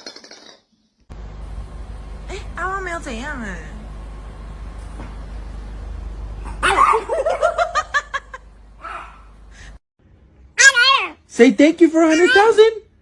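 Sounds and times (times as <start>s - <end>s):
low steady hum: 1.1s - 10.6s
dog yelping barks: 6.4s - 7.6s, 8.8s - 9.3s, 10.6s - 11.2s.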